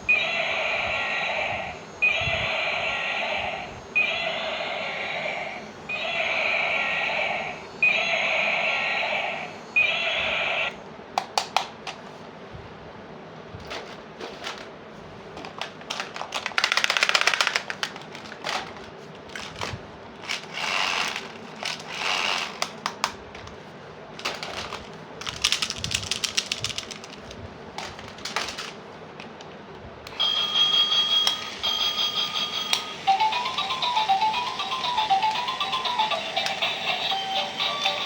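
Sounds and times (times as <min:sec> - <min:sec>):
repeating electronic beeps: 0:02.0 - 0:10.7
plastic toy pieces rattling: 0:15.4 - 0:22.8, 0:24.2 - 0:28.8.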